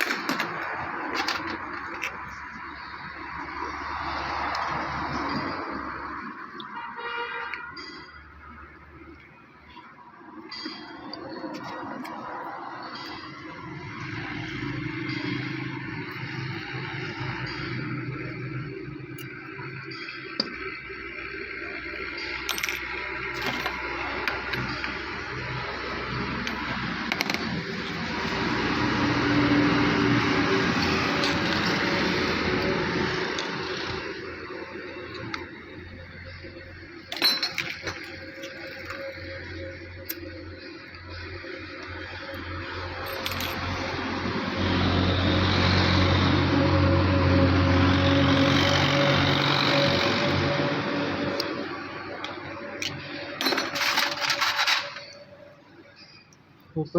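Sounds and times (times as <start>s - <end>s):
small metal parts clinking: 21.6s - 28.4s, 30.6s - 32.1s, 34.9s - 43.9s, 52.2s - 55.4s.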